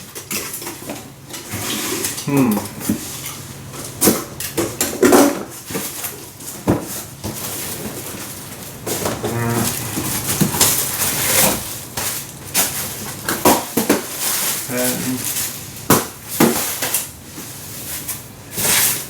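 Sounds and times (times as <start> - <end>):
cardboard box rustling and scraping: 7.4 - 11.8.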